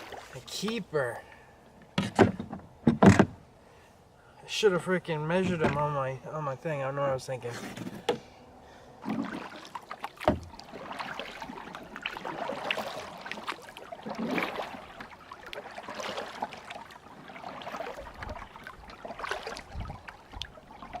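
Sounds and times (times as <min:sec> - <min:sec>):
water splashing around kayak: 0:00.0 - 0:03.6, 0:08.0 - 0:21.0.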